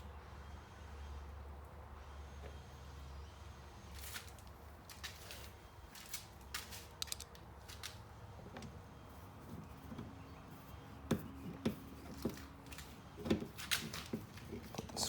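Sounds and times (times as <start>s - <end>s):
small plastic parts clicking: 6.8s - 8.0s.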